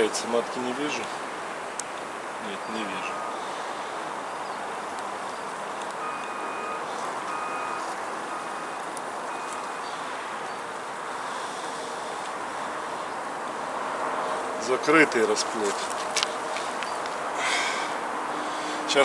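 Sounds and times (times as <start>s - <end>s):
honeybees humming: 0.0s - 19.0s
faint short beeps: 6.0s - 9.9s.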